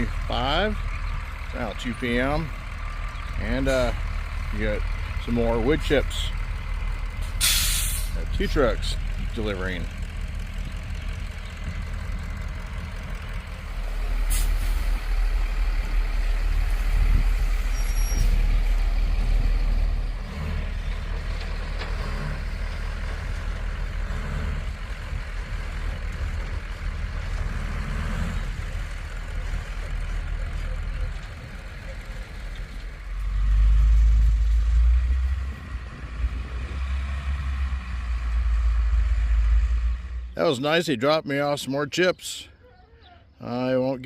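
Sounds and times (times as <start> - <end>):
diesel truck engine rumble: 0.0 - 44.0
air brake hiss: 7.4 - 8.1, 14.3 - 14.9.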